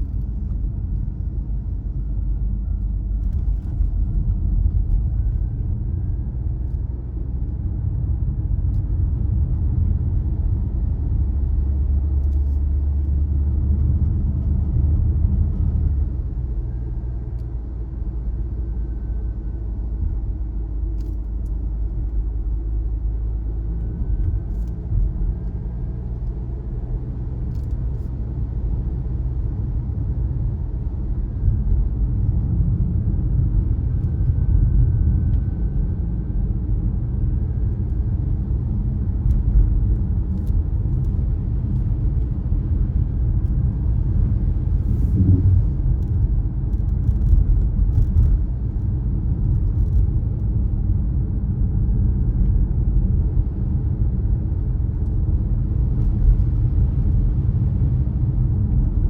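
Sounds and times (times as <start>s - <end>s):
car engine and tyre rumble: 0.0s - 59.0s.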